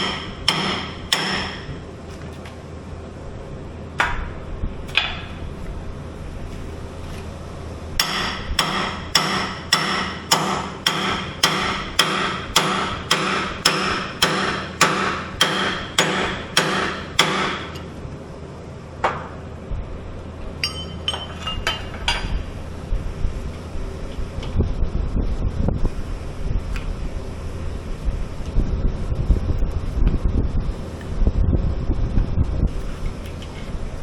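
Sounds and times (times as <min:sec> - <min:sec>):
hammer blows on metal: 0:08.0 - 0:17.9.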